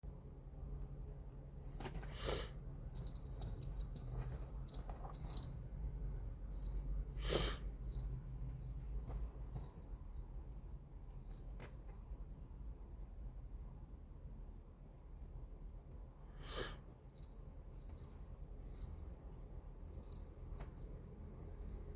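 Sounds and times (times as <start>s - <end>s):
cat toy rattling and jingling: 2.9s - 5.6s, 6.4s - 6.9s, 7.8s - 12.0s, 17.1s - 21.9s.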